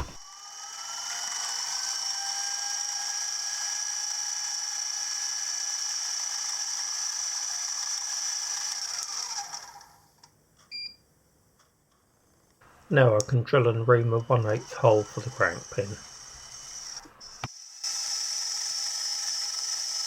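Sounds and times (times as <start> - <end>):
milling machine spindle whine: 14.1 - 20.0.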